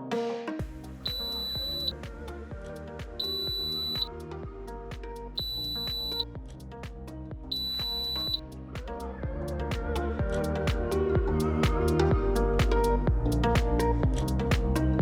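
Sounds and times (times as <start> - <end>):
background music: 0.0 - 15.0
long high alarm beeps: 1.1 - 1.9, 3.2 - 4.1, 5.4 - 6.2, 7.5 - 8.4.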